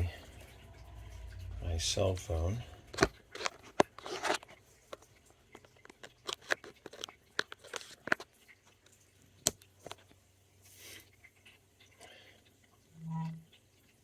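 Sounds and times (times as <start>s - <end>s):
phone and cable clicks and rustles: 0.2s - 10.2s.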